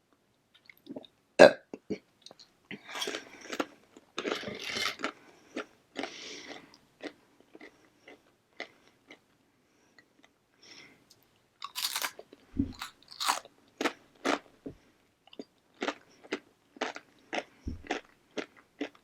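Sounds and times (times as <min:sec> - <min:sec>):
chips crunching while chewed: 0:02.8 - 0:09.2, 0:11.6 - 0:14.5, 0:15.3 - 0:19.0.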